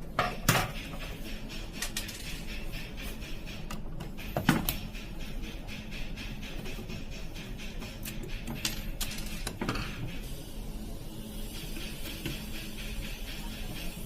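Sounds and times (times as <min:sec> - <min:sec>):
steady low hum: 0:00.0 - 0:14.0
tools clicking and clinking: 0:00.1 - 0:10.3.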